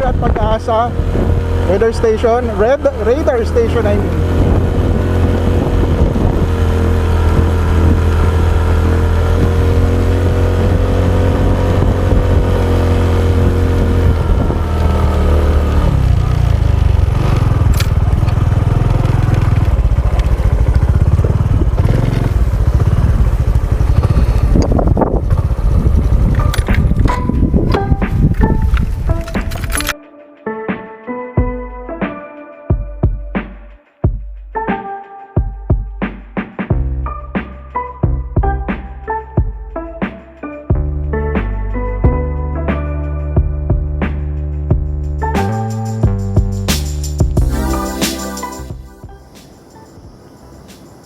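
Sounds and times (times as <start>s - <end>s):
motorcycle engine running: 0.0s - 29.7s.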